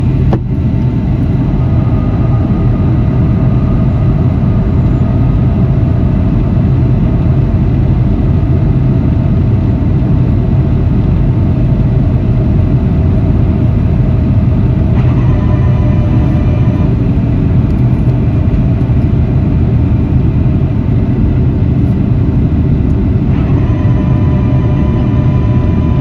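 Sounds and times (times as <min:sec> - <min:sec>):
aircraft engines rumbling: 0:00.0 - 0:26.0
faint whine: 0:00.0 - 0:26.0.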